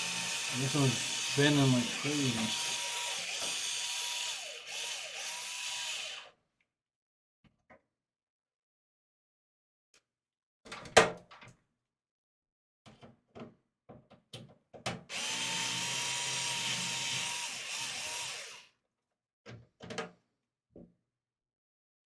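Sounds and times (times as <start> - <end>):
power drill whining: 0.0 - 6.3, 15.1 - 18.7.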